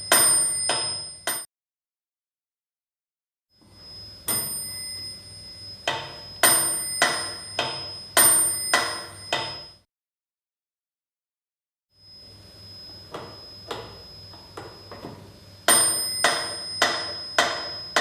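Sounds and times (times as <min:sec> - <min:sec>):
metronome bell ringing: 0:00.0 - 0:01.5, 0:04.2 - 0:09.8, 0:15.7 - 0:18.0.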